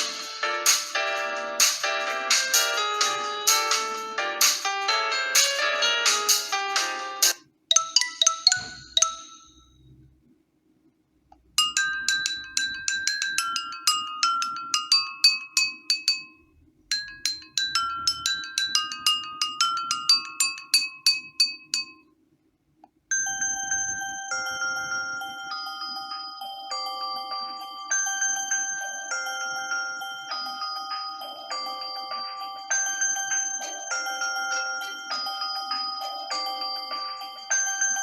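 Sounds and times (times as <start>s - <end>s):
phone ringtones: 0.0s - 10.0s, 23.1s - 38.0s
marimba-like melody: 17.0s - 22.0s, 26.9s - 38.0s.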